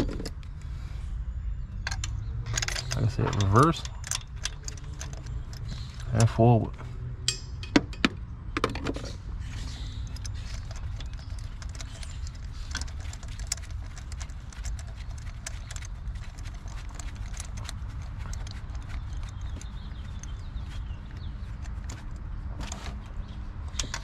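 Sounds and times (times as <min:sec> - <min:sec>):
ratchet clicking: 0:01.9 - 0:06.4, 0:09.9 - 0:22.3.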